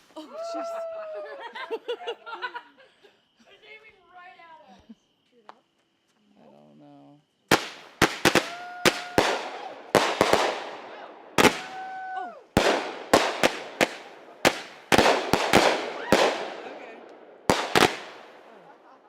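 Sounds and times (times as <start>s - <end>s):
fireworks banging and crackling: 7.5s - 19.0s
whistling fireworks: 7.5s - 19.0s.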